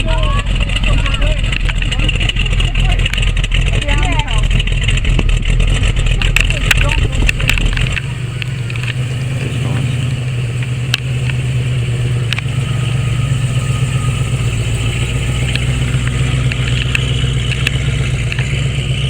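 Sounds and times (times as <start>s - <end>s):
car engine running: 0.0s - 19.0s
light ticks: 6.2s - 19.0s.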